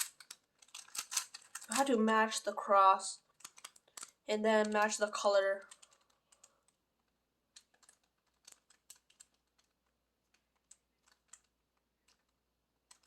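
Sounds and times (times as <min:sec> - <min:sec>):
plastic puzzle cube clicks: 0:00.0 - 0:01.9, 0:03.3 - 0:04.8, 0:05.6 - 0:06.8, 0:07.5 - 0:13.0.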